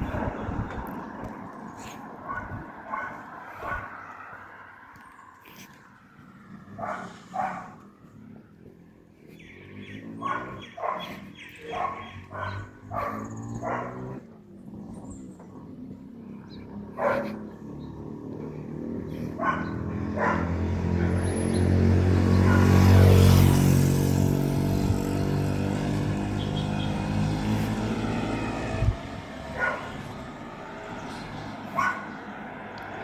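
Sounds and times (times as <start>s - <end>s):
vehicle driving past: 14.9s - 33.0s.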